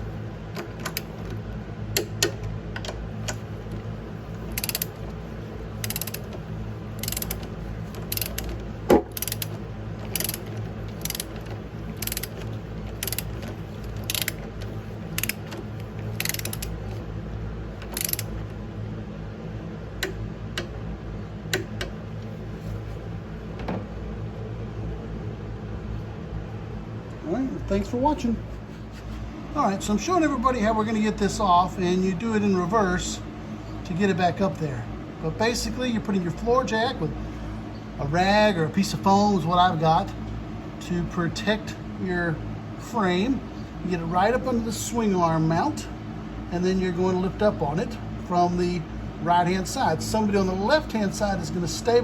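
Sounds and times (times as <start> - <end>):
steady low hum: 0.0 - 52.0
ratchet wrench clicking: 0.6 - 1.4, 2.0 - 17.0, 17.8 - 18.5.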